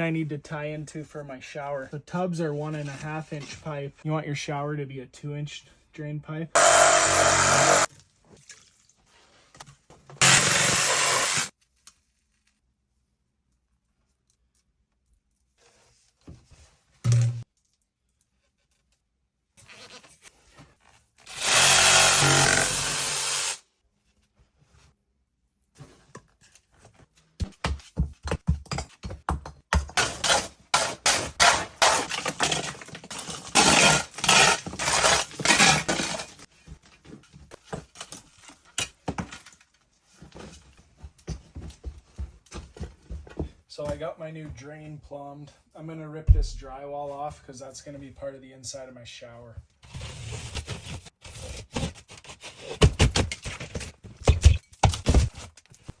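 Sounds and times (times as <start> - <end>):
drywall being ripped off: 10.2 - 11.5, 30.0 - 36.5, 49.8 - 55.6
board cracking and crunching: 30.0 - 36.5.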